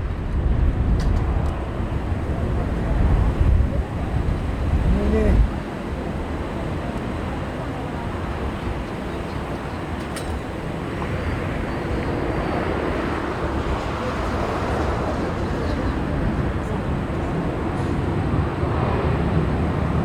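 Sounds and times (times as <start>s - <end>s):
jet engines roaring: 0.0s - 20.0s.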